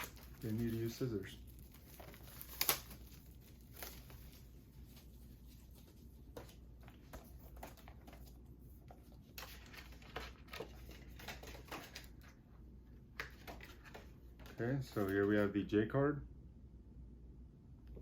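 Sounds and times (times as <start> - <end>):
plastic wrap crinkling and tearing: 0.0 - 5.0.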